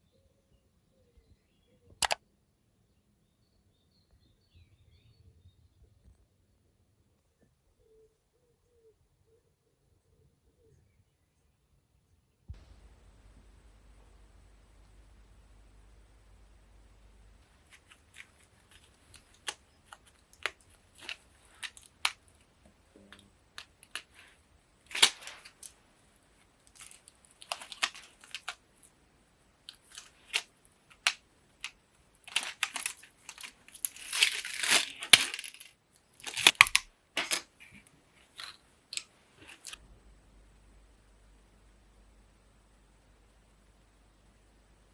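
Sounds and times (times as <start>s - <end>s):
rustling or crinkling: 16.9s - 39.8s.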